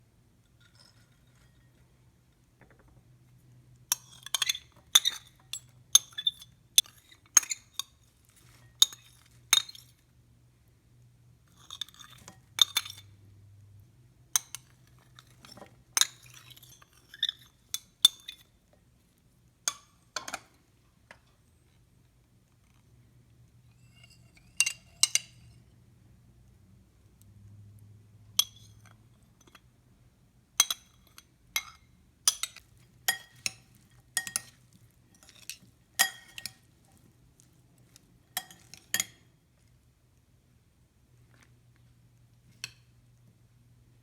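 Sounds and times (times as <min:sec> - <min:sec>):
utensils clinking against glass bowl: 0:11.6 - 0:13.1, 0:30.6 - 0:34.6, 0:35.2 - 0:36.6, 0:38.4 - 0:39.3.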